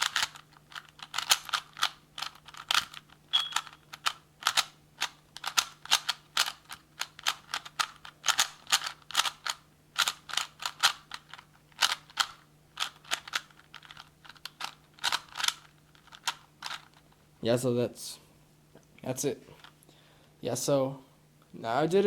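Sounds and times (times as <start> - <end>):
plastic puzzle cube clicking: 0.0 - 17.0.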